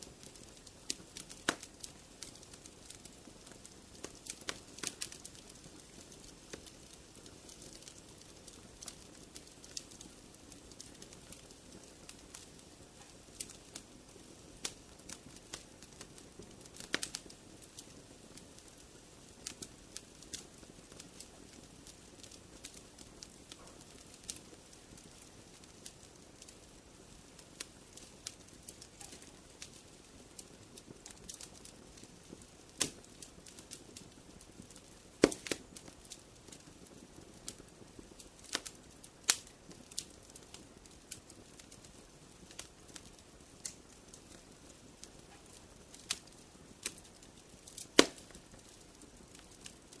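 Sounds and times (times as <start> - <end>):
wood fire crackling: 0.0 - 50.0
sharp fire pops: 0.2 - 11.4, 30.8 - 33.8, 34.6 - 36.6, 38.4 - 41.7, 42.4 - 49.8.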